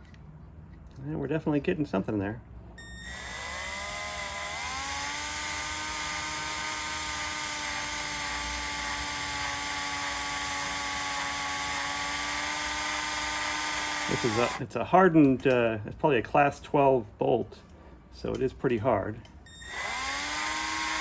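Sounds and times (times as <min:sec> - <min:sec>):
electric drill motor whine: 0:02.8 - 0:14.6, 0:19.5 - 0:21.0.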